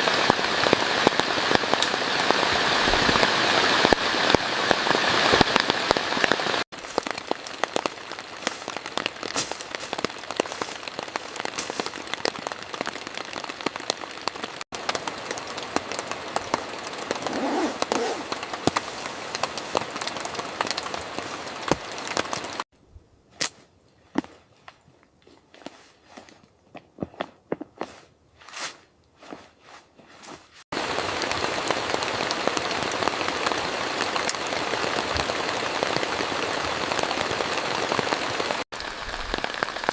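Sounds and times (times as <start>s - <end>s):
heavy rain with drop taps: 0.0s - 22.7s, 30.7s - 39.9s.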